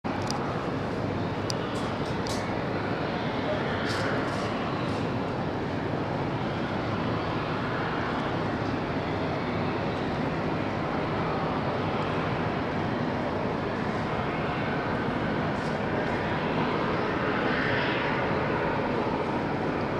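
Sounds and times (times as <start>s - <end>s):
propeller engine drone: 0.0s - 19.9s.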